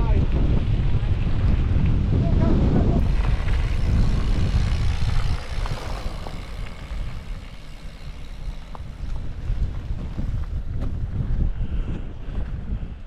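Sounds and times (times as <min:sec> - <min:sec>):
gusty wind buffeting microphone: 0:00.0 - 0:13.0.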